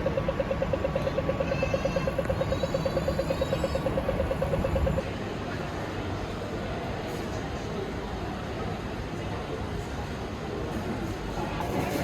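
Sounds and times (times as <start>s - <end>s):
rapid electronic beeping: 0.0s - 5.0s
street traffic rumbling: 0.0s - 5.0s.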